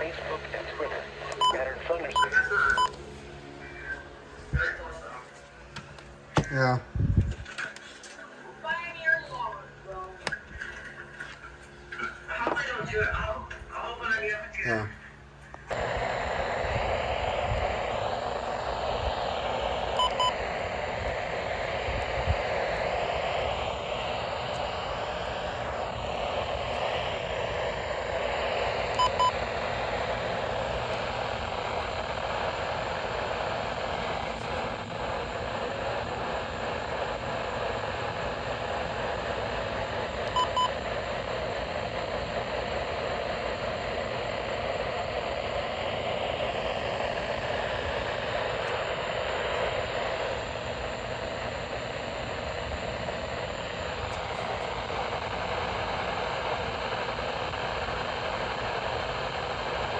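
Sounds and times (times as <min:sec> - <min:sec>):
steady rushing noise: 0:15.7 - 0:59.9
high double beep: 0:29.0 - 0:29.4.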